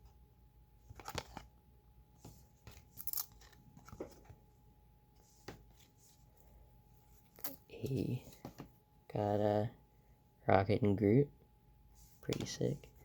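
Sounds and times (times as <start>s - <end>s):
trading cards clicking and scraping: 2.6s - 4.3s.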